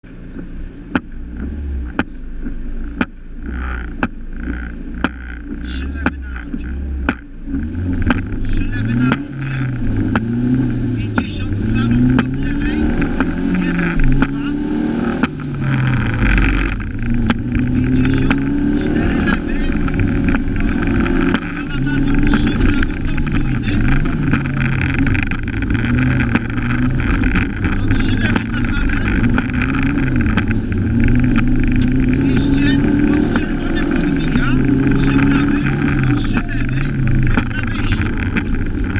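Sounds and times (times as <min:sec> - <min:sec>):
car engine idling: 0:00.0 - 0:38.9.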